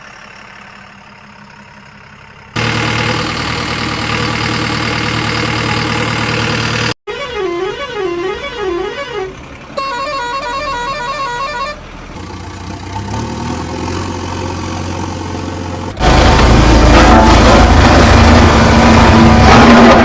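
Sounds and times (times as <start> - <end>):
vehicle engine running: 0.0 - 7.0, 11.7 - 20.0
musical horn tune: 7.1 - 11.8.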